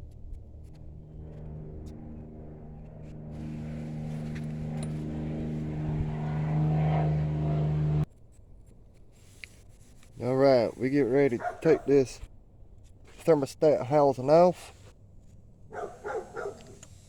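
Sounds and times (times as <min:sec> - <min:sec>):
motor humming: 0:00.0 - 0:08.1.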